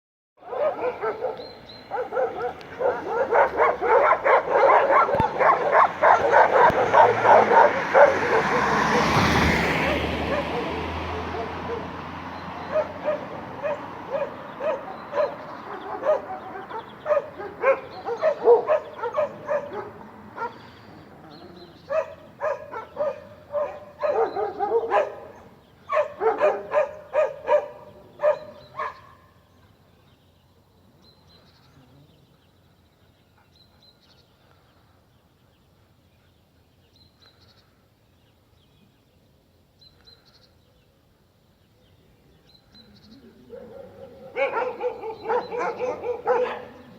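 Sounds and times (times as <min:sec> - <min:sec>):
dog barking: 0:00.4 - 0:29.3, 0:43.5 - 0:46.9.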